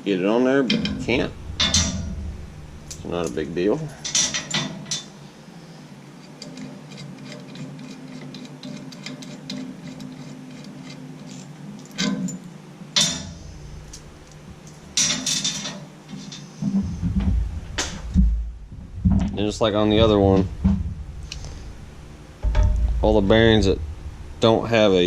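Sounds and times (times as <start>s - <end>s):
metal clattering: 0.6s - 5.2s, 6.4s - 25.0s
tools clicking on metal parts: 2.8s - 5.2s, 6.2s - 16.6s.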